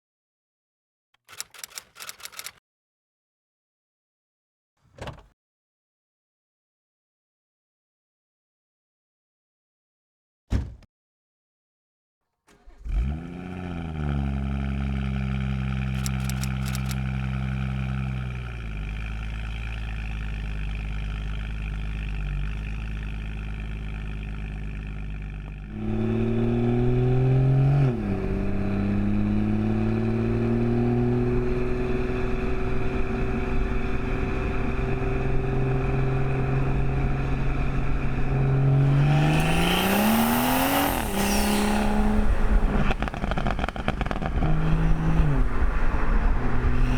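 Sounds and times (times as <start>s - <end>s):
car engine idling and revving: 12.5s - 46.9s
car engine starting: 12.5s - 46.9s.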